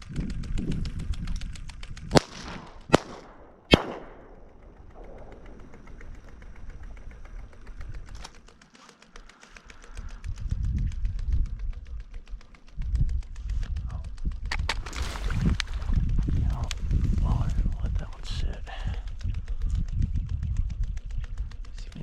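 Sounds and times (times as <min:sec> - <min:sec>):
shotgun shots with echo: 0:02.1 - 0:06.3.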